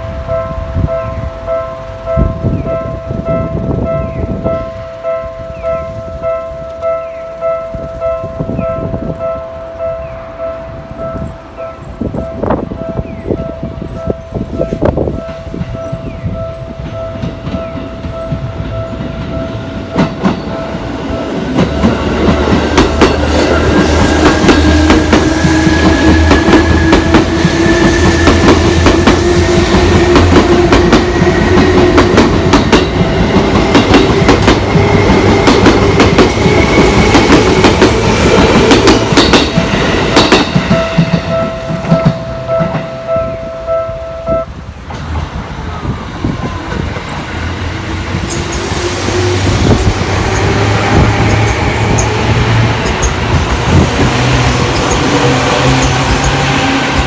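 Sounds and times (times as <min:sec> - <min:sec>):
level crossing warning bell: 0:00.0 - 0:44.8, 0:48.1 - 0:57.0
low train rumble: 0:00.0 - 0:57.0
train wheels clacking: 0:00.0 - 0:57.0
train motor whine: 0:16.6 - 0:43.6, 0:44.6 - 0:57.0.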